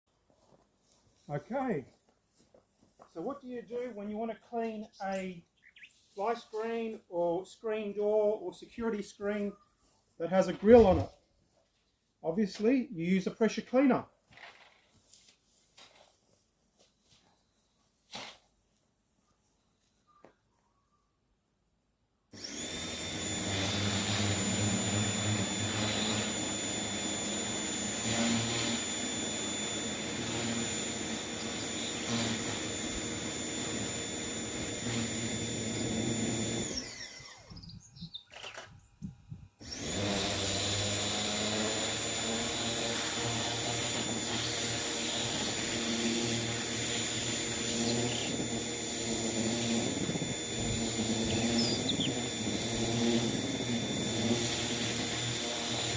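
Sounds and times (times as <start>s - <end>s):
pressure washer motor whine: 22.4s - 37.7s, 39.6s - 55.9s.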